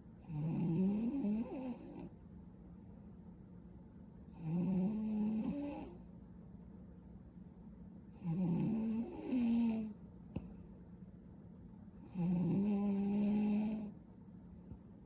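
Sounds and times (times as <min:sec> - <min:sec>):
woman snoring: 0:00.2 - 0:02.1, 0:04.4 - 0:06.0, 0:08.2 - 0:10.0, 0:12.1 - 0:13.9.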